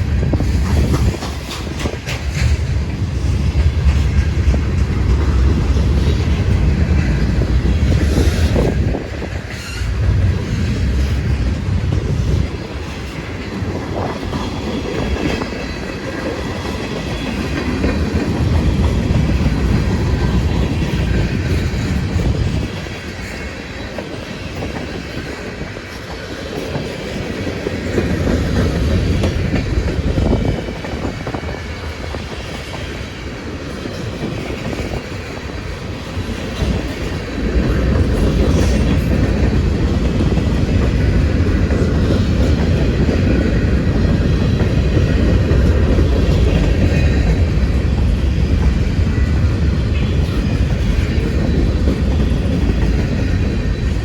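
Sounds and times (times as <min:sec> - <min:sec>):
freight train rumbling past: 0:00.0 - 0:54.0
wheels clacking over rail joints: 0:00.0 - 0:54.0.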